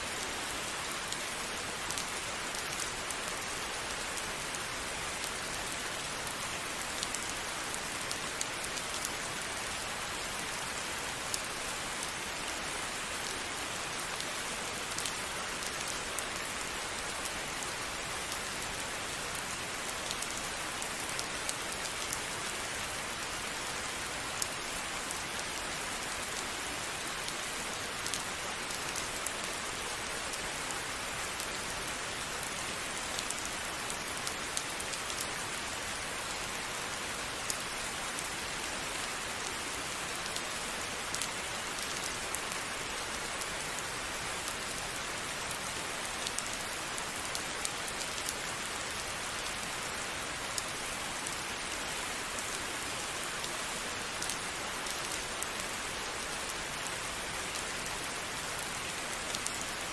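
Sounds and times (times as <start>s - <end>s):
steady rain falling: 0.0s - 59.9s
close raindrop ticks: 14.9s - 17.6s, 54.1s - 55.8s.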